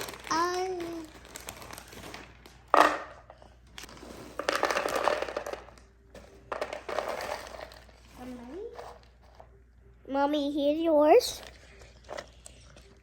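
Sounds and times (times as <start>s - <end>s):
popcorn bag crinkling: 0.0s - 9.2s.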